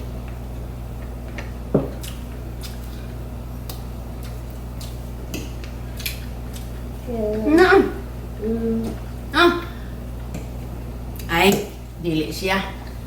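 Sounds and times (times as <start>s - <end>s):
wet chewing: 1.3s - 9.2s.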